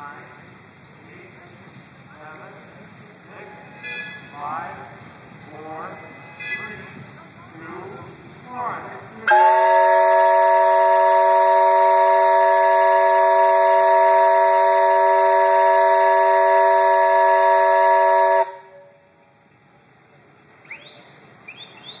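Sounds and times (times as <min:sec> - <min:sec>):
steam whistle blast: 0:09.3 - 0:19.1.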